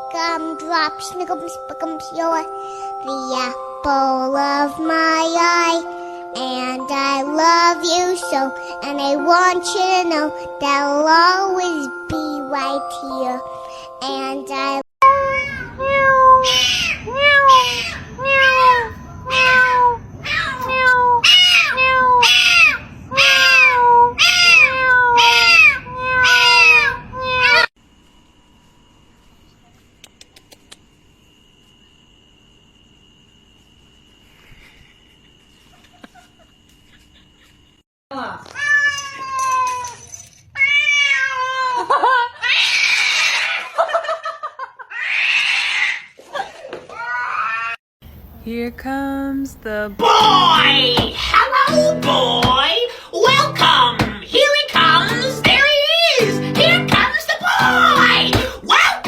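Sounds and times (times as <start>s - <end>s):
cat meowing: 15.0s - 27.7s, 40.6s - 41.8s.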